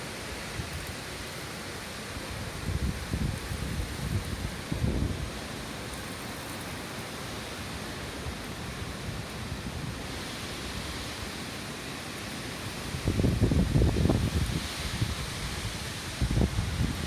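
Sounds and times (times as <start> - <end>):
heavy rain: 0.0 - 17.0
strong wind hissing: 0.2 - 17.0
wind buffeting microphone: 2.5 - 5.4, 12.8 - 17.0.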